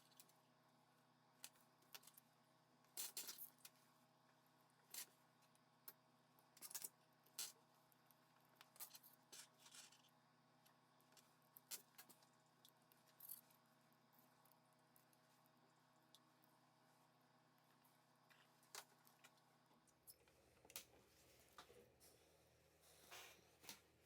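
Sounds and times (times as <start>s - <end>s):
quiet background hum: 0.0s - 24.0s
small parts clicking and scraping: 2.9s - 3.8s, 6.6s - 7.6s, 8.6s - 13.6s.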